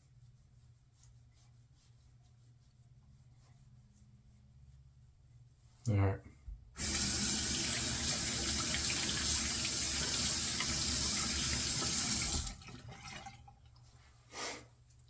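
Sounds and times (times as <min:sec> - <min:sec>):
sink tap running: 0:06.8 - 0:13.6.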